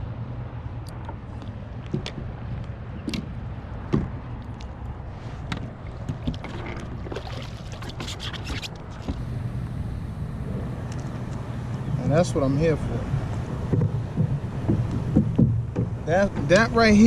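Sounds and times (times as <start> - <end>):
low rumble of water and wind: 0.0 - 17.0
gear knocking on plastic kayak: 13.5 - 17.0.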